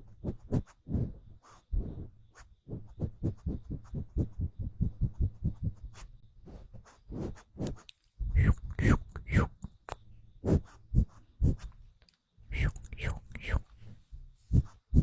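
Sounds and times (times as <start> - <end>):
soft low thumps: 0.0 - 6.0, 14.2 - 15.0.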